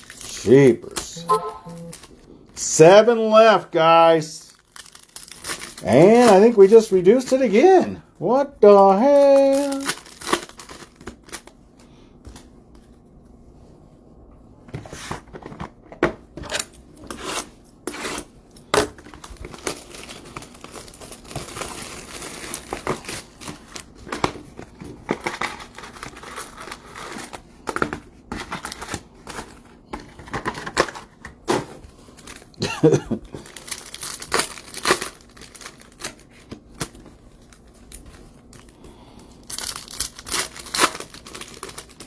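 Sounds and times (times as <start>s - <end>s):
plastic packaging crinkling: 4.5s - 6.6s, 9.4s - 11.5s, 33.4s - 36.4s, 39.4s - 42.0s.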